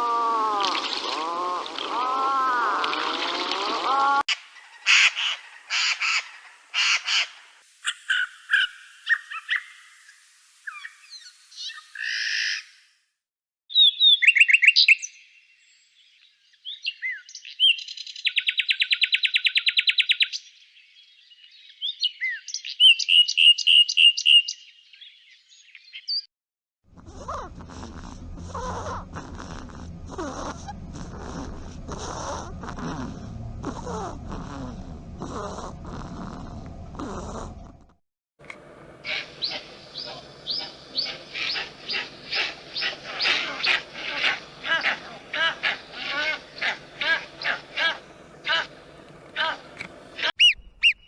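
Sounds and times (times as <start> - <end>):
rough animal sound: 0.0 - 6.3, 26.9 - 50.3
bird calls and chirps: 13.7 - 26.3, 38.6 - 51.0
fast buzzing bird trill: 38.9 - 51.0.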